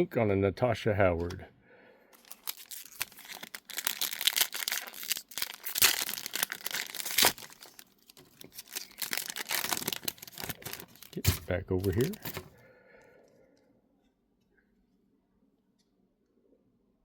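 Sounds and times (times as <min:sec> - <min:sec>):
foil wrapper crinkling and tearing: 0:02.2 - 0:12.5.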